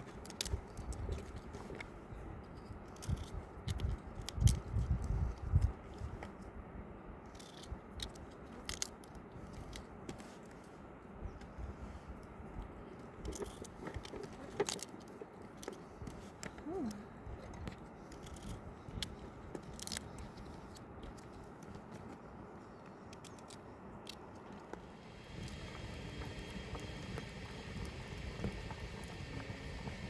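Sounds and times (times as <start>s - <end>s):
sharp clicks and crunches: 0.0s - 6.4s, 7.3s - 10.7s, 12.2s - 24.8s.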